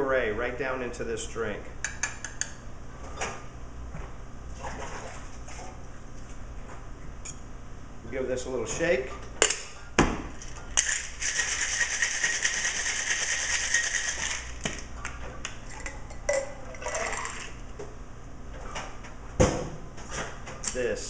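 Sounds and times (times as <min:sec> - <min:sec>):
ice rattling in cocktail shaker: 0:10.8 - 0:14.7, 0:16.7 - 0:17.6.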